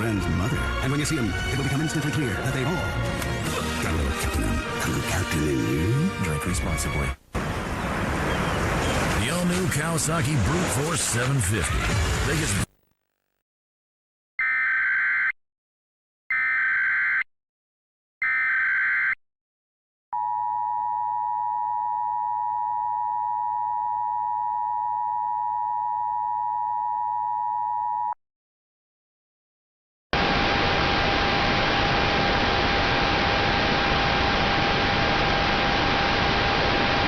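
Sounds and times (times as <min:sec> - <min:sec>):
two-tone attention alarm: 0:14.4 - 0:15.4, 0:16.3 - 0:17.3, 0:18.2 - 0:19.2.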